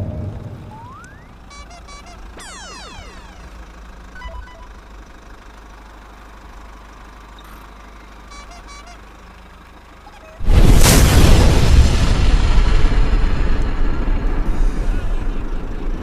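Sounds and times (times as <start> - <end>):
low engine-like rumble: 0.0 - 16.0
short chiming tones: 0.7 - 4.8
loud rushing noise: 10.4 - 12.9.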